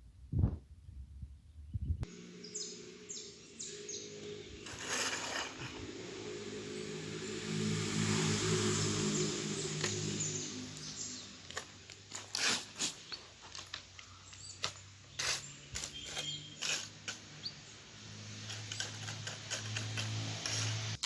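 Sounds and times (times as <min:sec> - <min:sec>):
knocks and scrapes of masonry work: 0:04.5 - 0:06.6, 0:09.2 - 0:17.6, 0:18.2 - 0:21.0.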